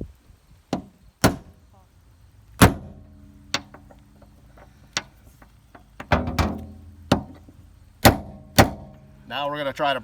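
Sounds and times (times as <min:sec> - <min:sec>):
metal taps on bolts: 0:03.5 - 0:09.0.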